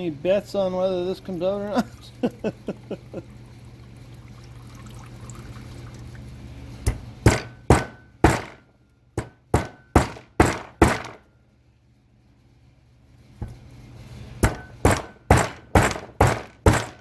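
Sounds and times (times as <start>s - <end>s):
hammer tapping on metal: 6.9s - 11.2s, 14.4s - 17.0s.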